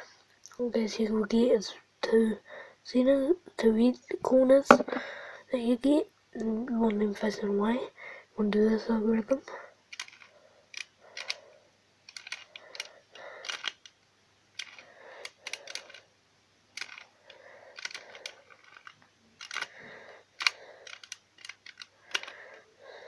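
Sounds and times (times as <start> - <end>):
puzzle cube plastic clicking: 9.9 - 11.4, 12.0 - 16.1, 16.7 - 22.6.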